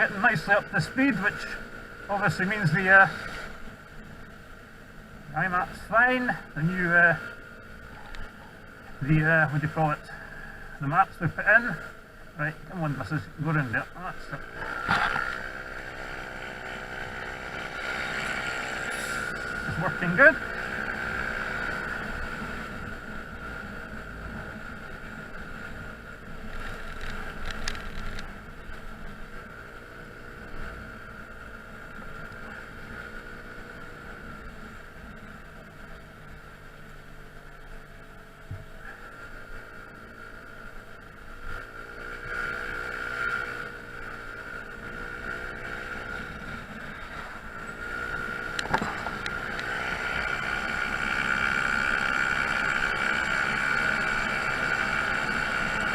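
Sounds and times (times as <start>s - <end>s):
scooter engine running: 14.1s - 55.9s.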